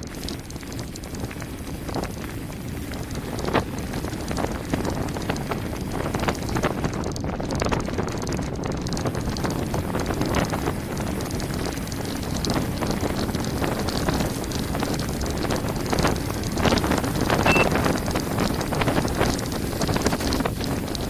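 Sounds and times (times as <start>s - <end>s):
bike rattling: 0.0s - 21.0s
bike tyres rolling over stones: 0.0s - 21.0s
wind noise on microphone: 0.0s - 21.0s.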